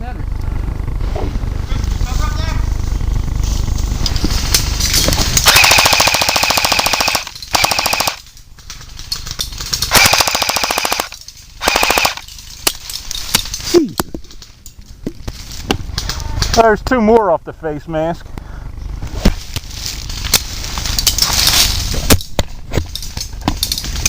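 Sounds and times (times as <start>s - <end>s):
airsoft rifle firing bursts: 5.4s - 8.2s, 9.9s - 12.2s.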